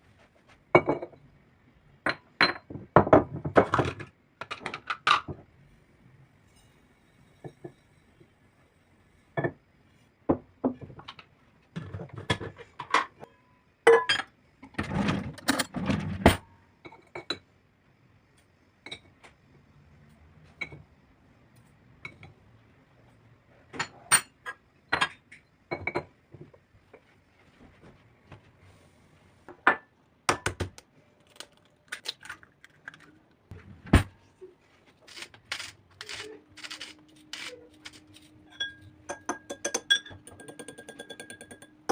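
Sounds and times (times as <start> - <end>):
clattering dishes: 2.1 - 5.4, 11.8 - 13.3, 13.9 - 17.4, 38.5 - 41.8
dishes and cutlery clinking: 37.8 - 41.8.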